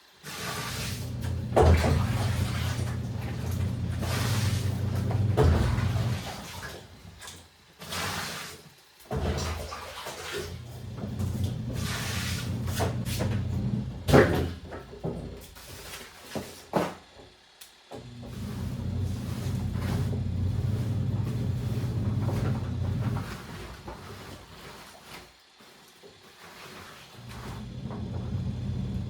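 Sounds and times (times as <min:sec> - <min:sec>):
washing machine motor humming: 0:00.1 - 0:08.3, 0:09.0 - 0:16.0, 0:17.9 - 0:29.0.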